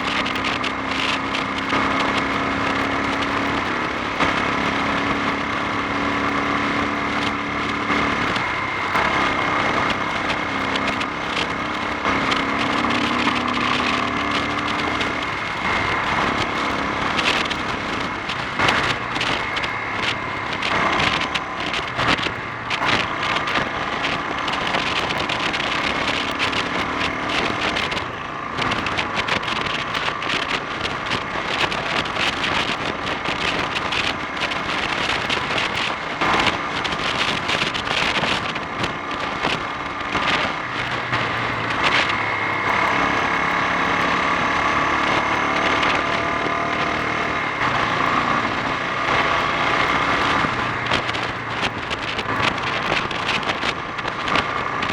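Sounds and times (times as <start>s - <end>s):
motorcycle engine revving: 0.0s - 54.9s
wind rushing over microphone: 0.0s - 54.9s.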